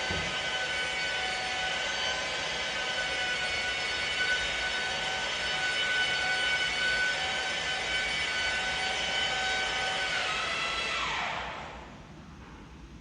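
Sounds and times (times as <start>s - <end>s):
electric polisher whining: 0.0s - 11.6s.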